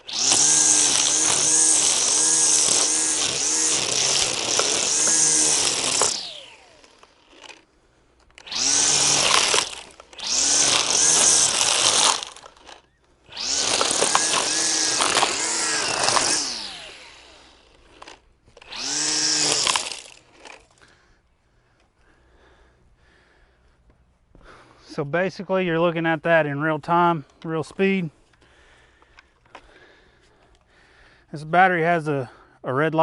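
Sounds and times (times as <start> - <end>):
string trimmer motor whining: 0.0 - 23.4.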